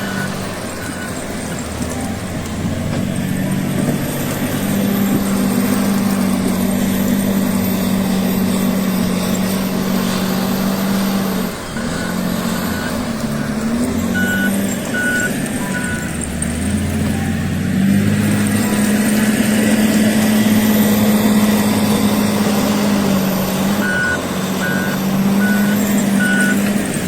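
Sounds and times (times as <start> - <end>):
short reversing beeps: 0.0 - 1.3, 11.8 - 16.2, 23.8 - 26.6
heavy diesel engine running: 0.0 - 27.0.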